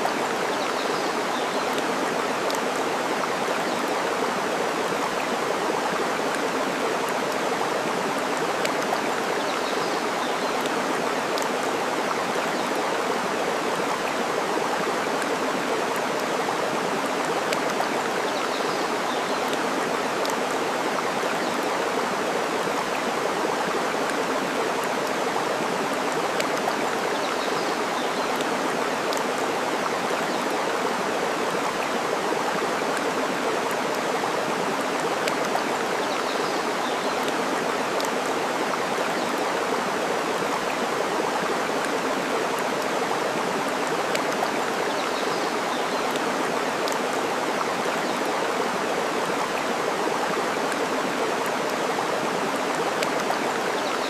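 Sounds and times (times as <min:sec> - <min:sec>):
flowing water rushing: 0:00.0 - 0:54.0.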